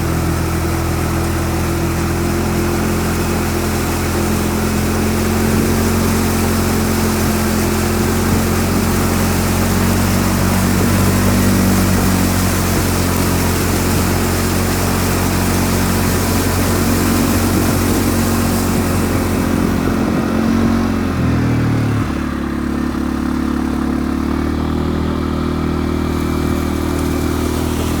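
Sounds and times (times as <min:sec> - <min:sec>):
buggy engine running: 0:00.0 - 0:28.0.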